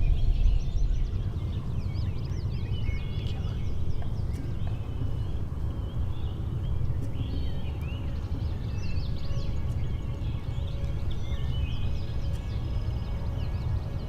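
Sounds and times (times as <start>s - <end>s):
low rumble: 0.0s - 6.9s
songbirds singing and chirping: 0.0s - 14.0s.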